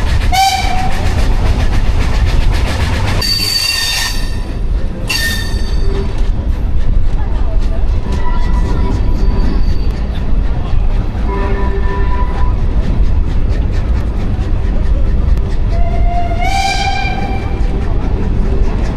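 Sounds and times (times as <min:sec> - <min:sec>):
steam train rumbling: 0:00.0 - 0:18.9
steam locomotive whistle: 0:00.3 - 0:01.1, 0:03.2 - 0:04.4, 0:11.3 - 0:12.6, 0:15.7 - 0:17.6
faint rail clicks: 0:12.6 - 0:18.9.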